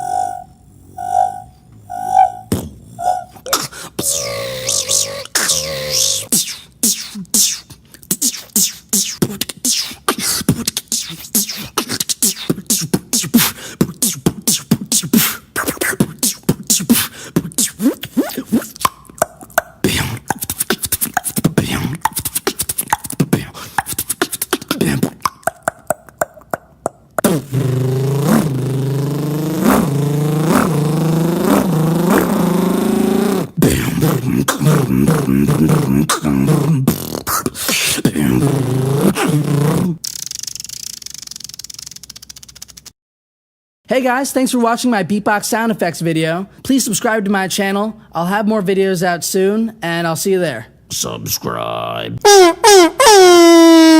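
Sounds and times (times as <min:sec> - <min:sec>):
pulsing vocal buzzing tone: 0:00.0 - 0:06.4, 0:27.2 - 0:37.0
beatboxing clicks and pops: 0:02.5 - 0:43.0.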